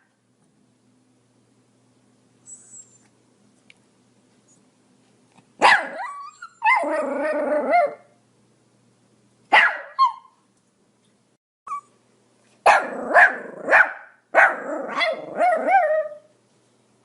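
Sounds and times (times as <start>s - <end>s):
dog bark-growl: 5.6s - 8.0s, 12.7s - 16.2s
small dog barking: 5.6s - 8.1s, 9.5s - 10.4s, 12.6s - 16.2s.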